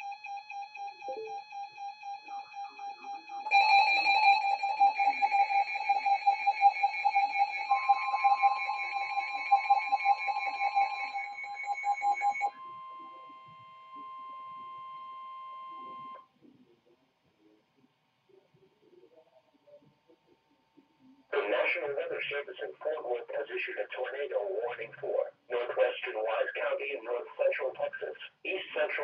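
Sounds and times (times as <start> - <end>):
rapidly pulsing beep: 0.0 - 16.2
steady high electronic tone: 2.2 - 16.2.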